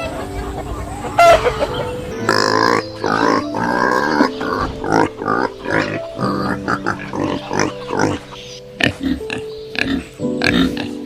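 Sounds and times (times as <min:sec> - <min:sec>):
farm animal calling: 0:00.0 - 0:11.0.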